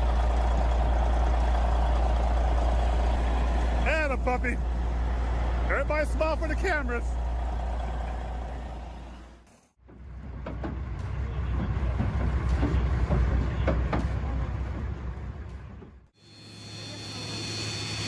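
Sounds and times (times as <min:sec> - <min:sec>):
heavy vehicle rumbling: 0:00.0 - 0:16.1
sharp knocks and clanks: 0:09.8 - 0:14.9.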